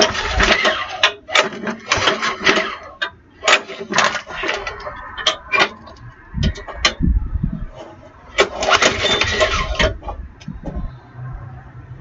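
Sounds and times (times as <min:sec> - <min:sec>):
lawn mower engine cranking: 0:00.0 - 0:07.0, 0:07.7 - 0:10.5
recoil starter pulls: 0:00.0 - 0:07.1, 0:07.7 - 0:10.9.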